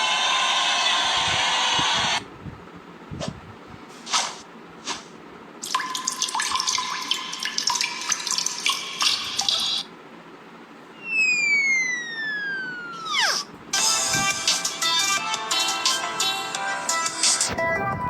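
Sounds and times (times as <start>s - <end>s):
water trickling: 5.6s - 9.8s.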